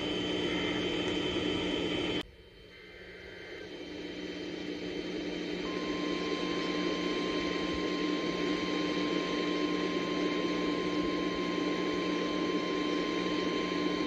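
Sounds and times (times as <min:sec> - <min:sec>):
radio static hiss: 0:00.0 - 0:08.6
steady warning alarm tone: 0:00.0 - 0:14.0.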